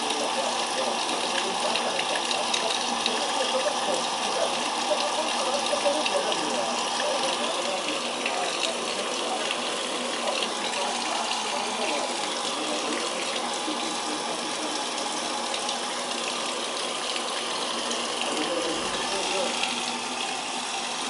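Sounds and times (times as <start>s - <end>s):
water running into washing machine: 0.0s - 21.0s.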